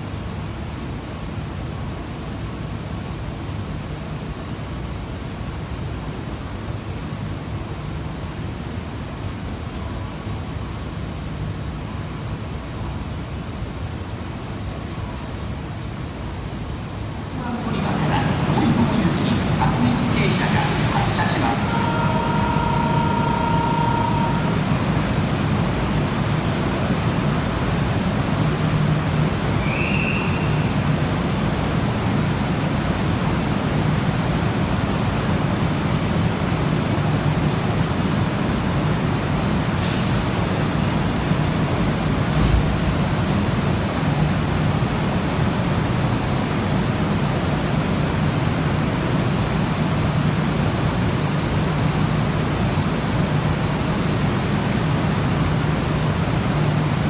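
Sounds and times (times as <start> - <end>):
electric train humming: 17.2 - 44.2
air hiss: 17.4 - 25.5, 39.8 - 42.0.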